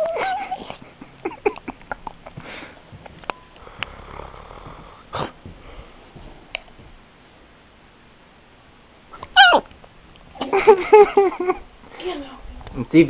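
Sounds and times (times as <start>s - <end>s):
small dog sniffing and snorting: 3.6s - 5.6s.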